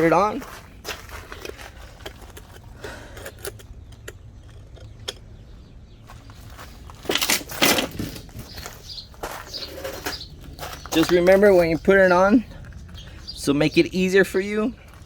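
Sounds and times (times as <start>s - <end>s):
metallic clatter: 7.0s - 8.4s.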